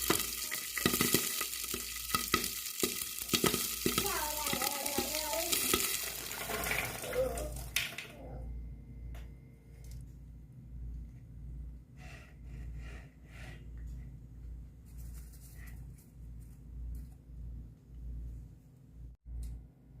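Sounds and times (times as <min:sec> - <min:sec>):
oil sizzling in a pan: 0:00.0 - 0:07.6
popcorn popping: 0:00.0 - 0:08.1.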